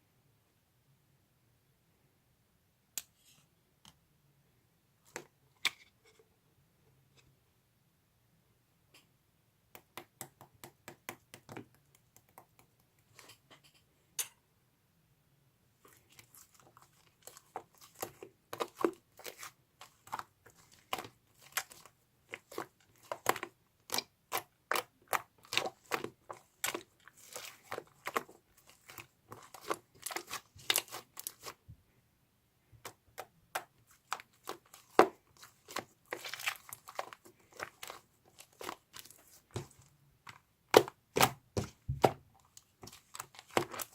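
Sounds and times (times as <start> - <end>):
crunching and crackling: 15.9 - 31.6, 33.8 - 43.9.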